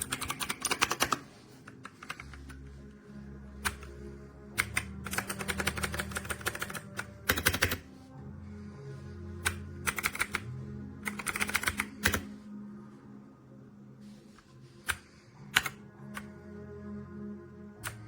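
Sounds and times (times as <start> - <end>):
mechanical keyboard typing: 0.0 - 2.5, 3.6 - 4.0, 4.6 - 7.8, 9.4 - 12.3, 14.9 - 16.3
background music: 0.0 - 18.0.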